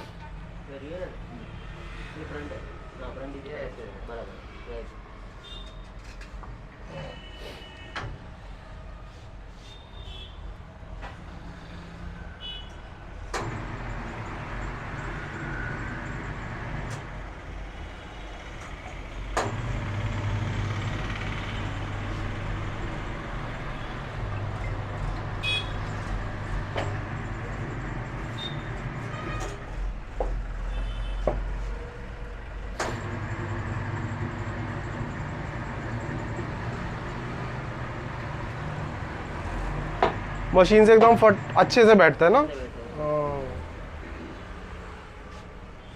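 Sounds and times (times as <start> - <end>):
electric motor running: 19.4 - 29.2, 32.8 - 41.8.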